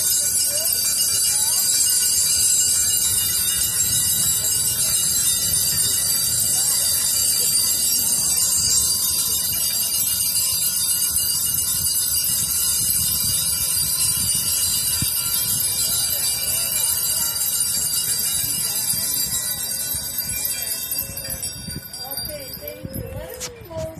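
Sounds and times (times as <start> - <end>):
many bells jingling: 0.0 - 23.9.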